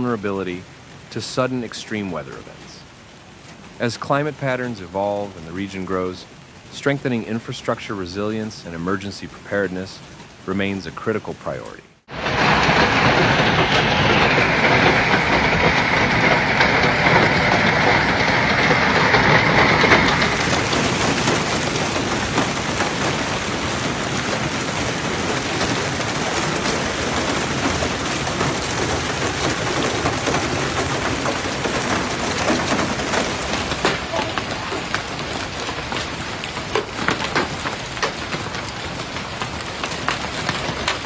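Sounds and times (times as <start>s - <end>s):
hail clattering on hard surfaces: 12.1s - 41.0s.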